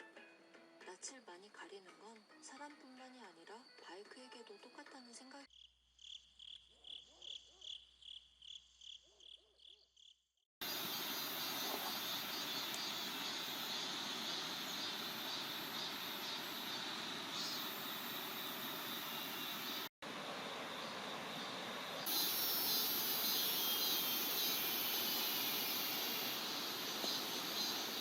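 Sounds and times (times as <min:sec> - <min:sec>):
insect chirping: 0:05.0 - 0:28.0
high insect buzz: 0:05.5 - 0:28.0.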